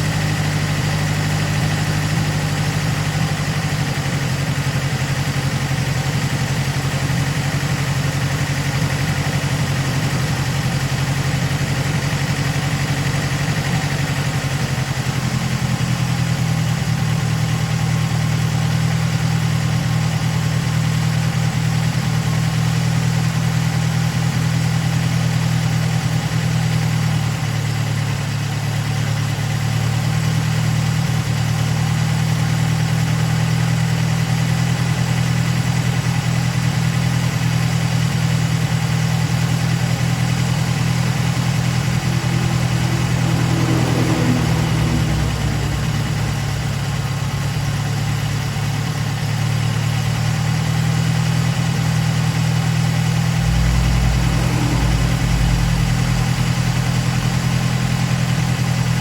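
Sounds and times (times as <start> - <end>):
car engine idling: 39.1 - 59.0
deep low drone: 39.2 - 49.6, 51.6 - 59.0.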